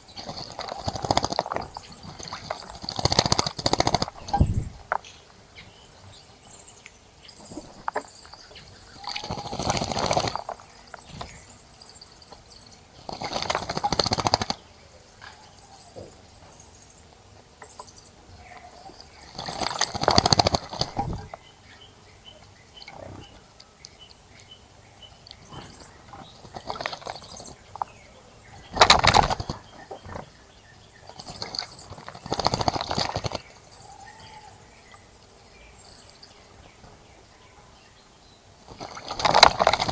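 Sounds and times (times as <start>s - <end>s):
bird splashing in water: 0.2s - 5.0s, 13.0s - 14.6s, 19.2s - 21.4s, 26.2s - 27.8s, 28.6s - 29.8s, 31.1s - 33.5s, 38.7s - 39.9s.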